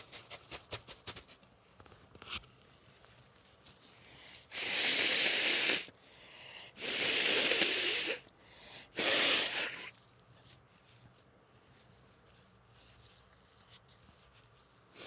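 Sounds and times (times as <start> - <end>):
person blowing nose: 4.5 - 5.9, 6.7 - 10.0.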